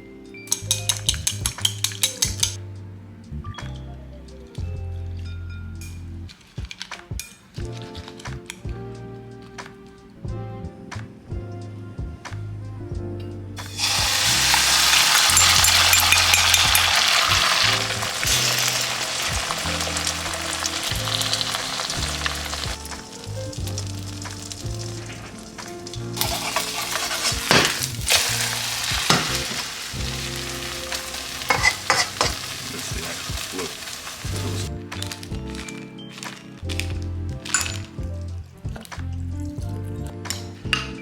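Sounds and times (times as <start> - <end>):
utensil clinking against wok: 0.5 - 2.6, 13.6 - 23.2, 24.4 - 35.7
egg sizzling in hot oil: 13.6 - 34.7.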